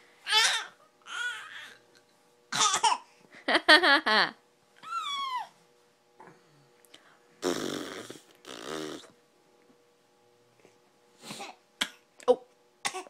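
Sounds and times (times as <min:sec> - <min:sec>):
baby fake coughing: 0:02.5 - 0:03.1.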